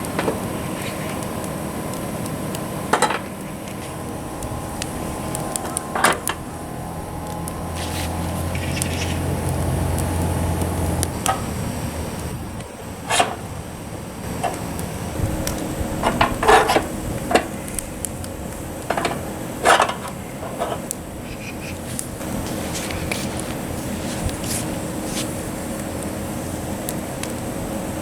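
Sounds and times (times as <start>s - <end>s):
low hum: 0.0s - 12.8s.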